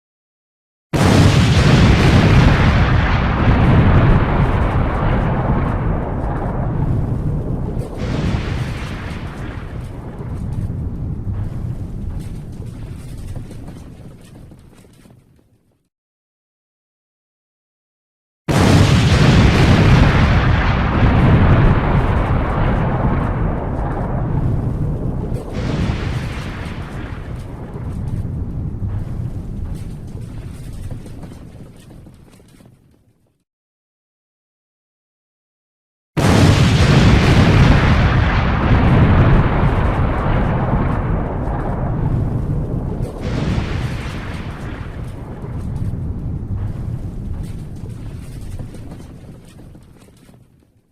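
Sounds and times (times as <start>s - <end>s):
smaller explosion burst: 1.0s - 13.5s, 18.5s - 31.1s, 36.2s - 49.6s
explosion rumble: 1.0s - 14.2s, 18.5s - 31.9s, 36.2s - 50.0s.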